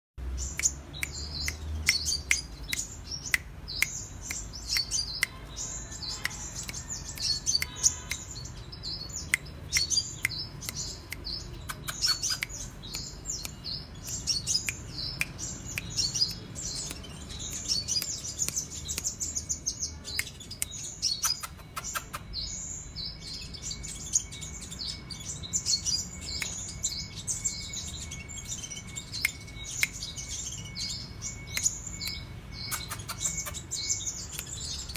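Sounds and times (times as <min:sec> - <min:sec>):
sharp bird clicks: 0:00.3 - 0:22.6, 0:25.7 - 0:27.7, 0:28.4 - 0:34.9
sunbird singing high trills: 0:00.4 - 0:34.9.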